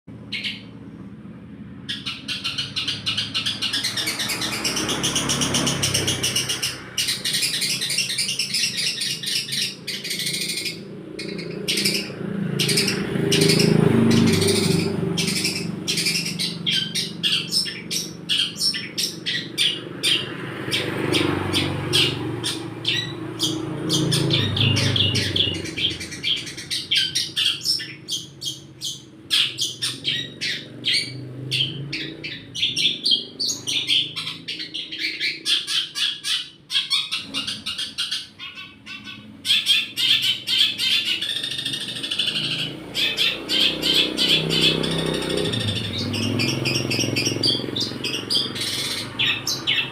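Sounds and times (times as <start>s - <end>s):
bird chattering chirps: 0.1s - 0.8s, 1.7s - 49.9s.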